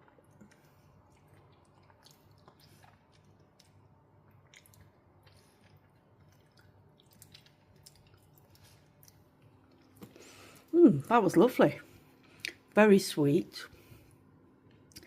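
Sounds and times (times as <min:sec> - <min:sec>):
wet chewing of mango: 0:00.0 - 0:10.7.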